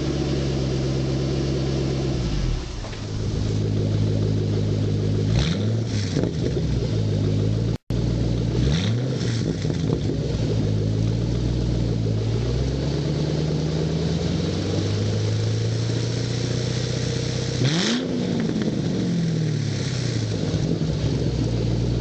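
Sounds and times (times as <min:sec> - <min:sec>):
car engine idling: 0:00.0 - 0:22.0
engine throttle blips: 0:00.0 - 0:22.0.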